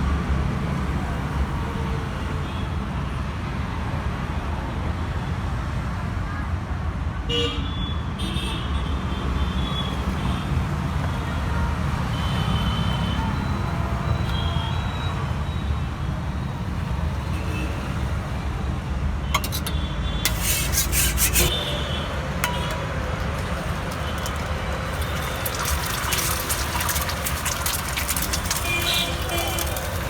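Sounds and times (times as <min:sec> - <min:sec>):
low traffic rumble: 0:18.0 - 0:30.0
metal utensils scraping cooking surface: 0:19.4 - 0:30.0.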